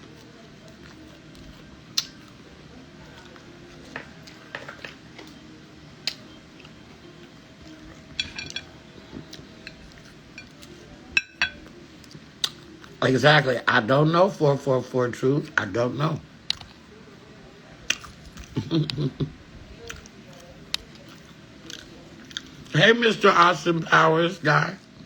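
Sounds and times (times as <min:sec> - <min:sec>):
cutlery clinking on a plate: 0:08.0 - 0:08.8, 0:09.6 - 0:11.7.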